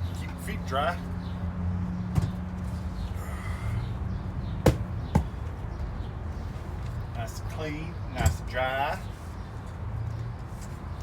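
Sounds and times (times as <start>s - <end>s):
sharp knocks: 4.6s - 5.4s.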